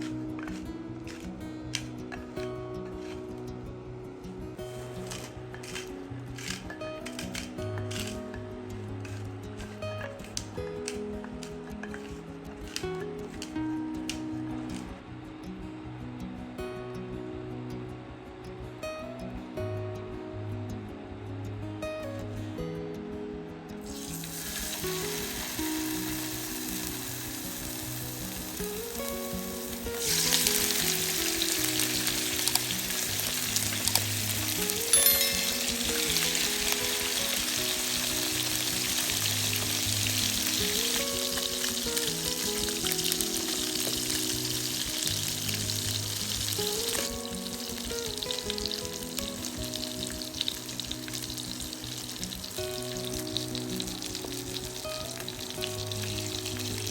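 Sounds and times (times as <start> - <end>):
background music: 0.0 - 56.9
food sizzling in hot oil: 4.7 - 8.4, 9.0 - 14.2, 23.9 - 56.9.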